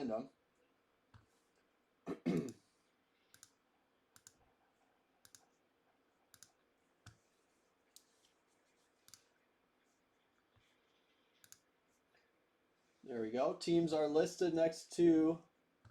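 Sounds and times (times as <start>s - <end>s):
computer mouse clicks: 3.3s - 3.6s, 4.2s - 4.5s, 5.2s - 5.5s, 6.3s - 7.2s, 7.9s - 8.4s, 9.0s - 9.3s, 10.5s - 11.7s.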